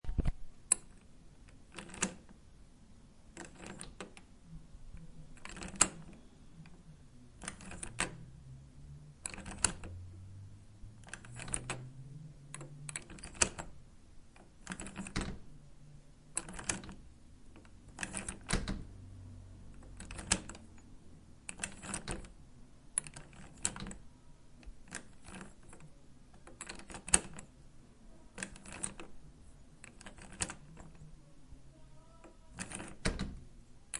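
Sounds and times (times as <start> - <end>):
faint low hum: 0.0 - 33.9
door latch clacking: 32.5 - 33.4.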